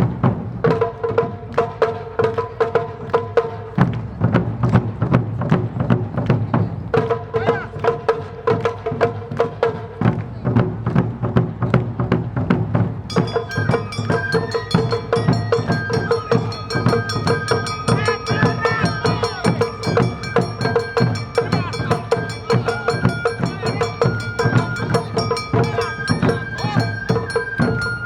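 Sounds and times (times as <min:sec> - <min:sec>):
taiko drums: 0:00.0 - 0:28.0
bamboo flute melody: 0:13.1 - 0:28.0
ringing hand gong: 0:13.1 - 0:28.0.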